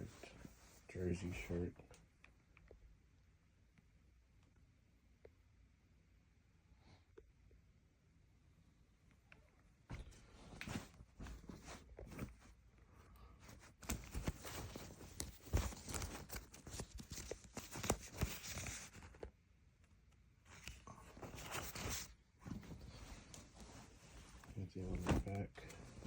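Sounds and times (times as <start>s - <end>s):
shirt rustling: 9.9s - 12.6s, 13.4s - 19.1s, 21.0s - 26.0s.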